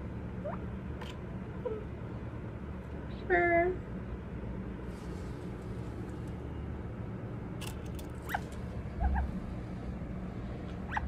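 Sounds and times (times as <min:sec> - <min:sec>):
steady low hum: 0:00.0 - 0:11.0
bird chirping: 0:08.2 - 0:09.4, 0:10.8 - 0:11.0.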